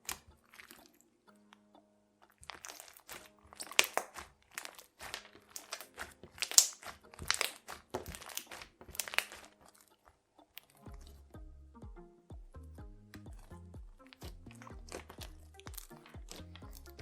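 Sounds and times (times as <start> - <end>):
faint music: 0.0 - 17.0
crunchy slime being squeezed: 2.4 - 9.8, 14.0 - 17.0.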